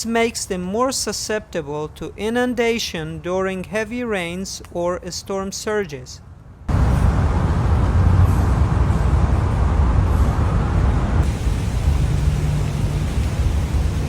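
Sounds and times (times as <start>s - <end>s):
city street traffic rumble: 5.9s - 14.0s
low engine hum: 6.7s - 14.0s.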